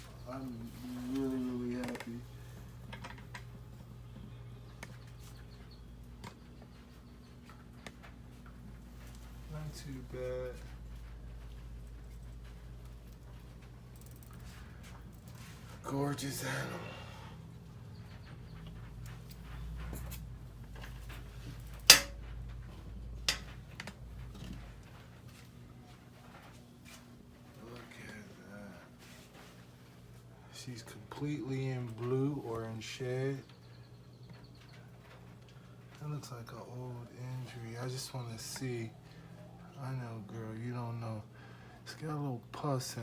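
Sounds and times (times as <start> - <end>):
steady low hum: 0.0 - 43.0
handling clicks and knocks: 18.7 - 24.9.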